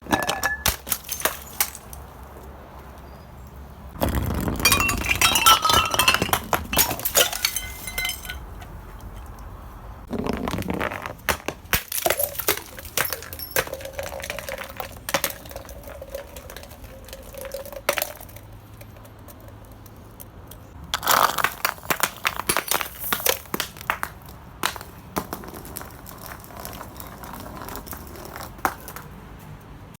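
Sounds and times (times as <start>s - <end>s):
glass bottles smashing: 0.0s - 1.9s, 4.0s - 8.5s, 11.3s - 14.7s
glass shards clinking: 4.6s - 8.4s.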